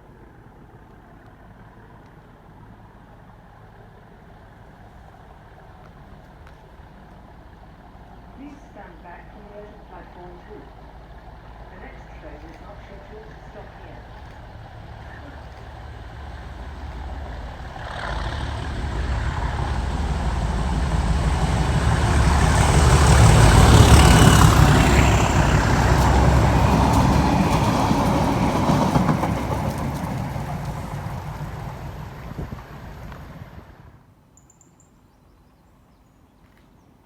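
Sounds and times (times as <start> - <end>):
diesel locomotive engine rumble: 0.0 - 34.1
train wheel noise: 4.6 - 34.0.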